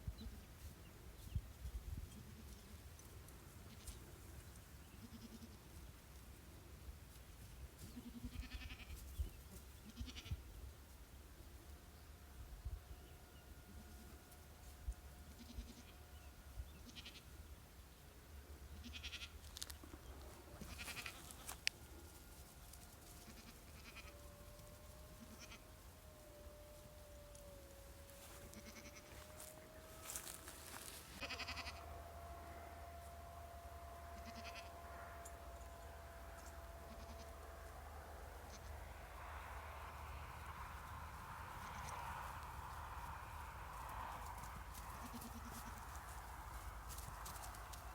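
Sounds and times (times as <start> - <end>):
goats bleating: 7.9 - 9.0, 15.4 - 15.9, 18.8 - 19.3, 20.6 - 21.6, 23.2 - 24.2, 25.2 - 25.6, 28.5 - 29.2, 30.0 - 31.9, 34.2 - 34.7, 36.4 - 37.4, 44.9 - 45.9
faint wavering tone: 31.7 - 38.0.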